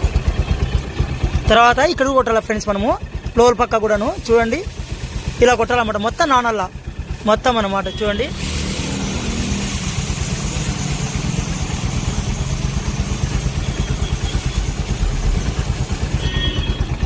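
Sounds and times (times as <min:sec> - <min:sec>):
motorcycle engine idling: 0:00.0 - 0:17.0
aerosol spray hissing: 0:03.8 - 0:16.4.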